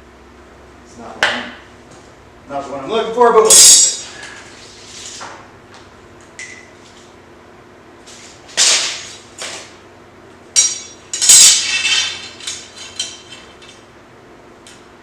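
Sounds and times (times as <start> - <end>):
metal tools clanking: 3.5 - 4.3, 10.6 - 13.8.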